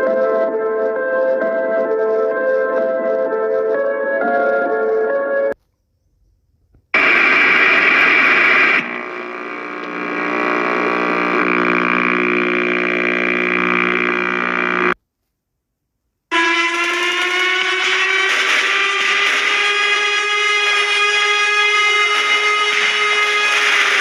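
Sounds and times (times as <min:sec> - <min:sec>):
harsh burst of noise and tones: 0:07.0 - 0:15.0, 0:16.3 - 0:24.0
steady buzzing tone: 0:07.0 - 0:15.0, 0:16.3 - 0:24.0
tone rising in pitch: 0:16.3 - 0:24.0.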